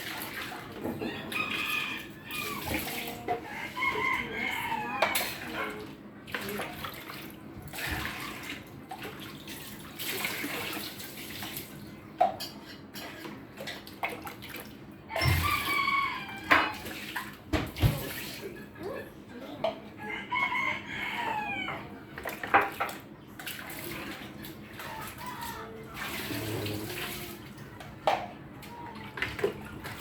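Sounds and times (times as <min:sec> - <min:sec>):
rooster crowing: 0:01.0 - 0:05.4, 0:15.1 - 0:16.8, 0:20.0 - 0:22.0
tap water running into sink: 0:14.0 - 0:18.4.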